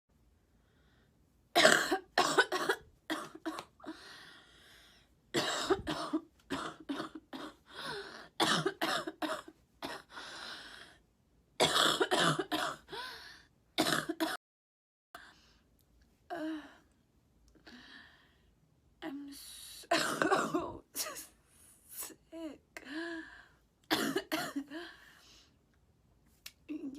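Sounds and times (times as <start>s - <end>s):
woman coughing: 1.6s - 3.7s, 5.4s - 7.6s, 8.4s - 10.1s, 11.6s - 12.9s, 13.8s - 14.4s, 19.9s - 21.4s, 23.9s - 24.8s.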